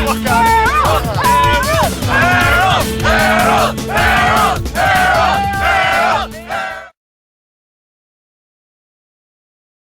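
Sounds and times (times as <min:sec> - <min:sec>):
electronic music: 0:00.2 - 0:06.9.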